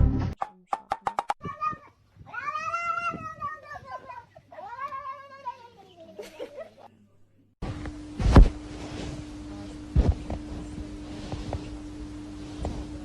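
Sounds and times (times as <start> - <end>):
cat meowing: 1.4 - 5.5
steady hum: 7.6 - 13.0.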